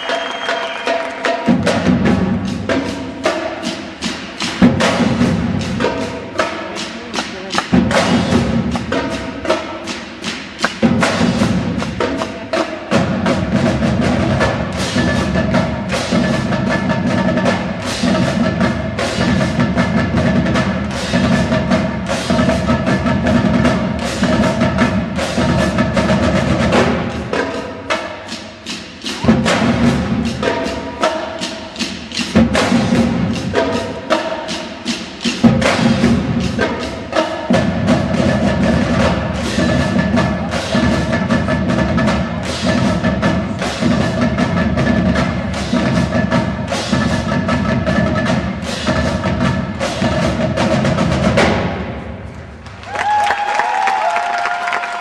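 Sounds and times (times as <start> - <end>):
snare drum cadence: 6.7 - 9.2, 10.2 - 11.2.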